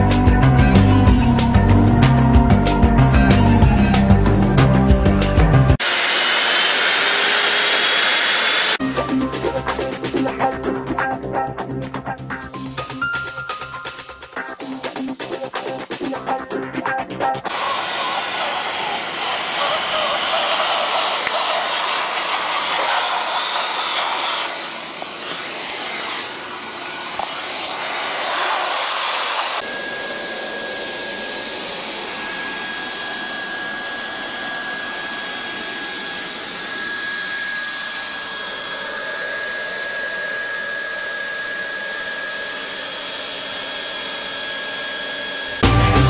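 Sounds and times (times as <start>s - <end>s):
hot-air welding gun blowing: 5.8s - 8.8s, 17.5s - 45.7s.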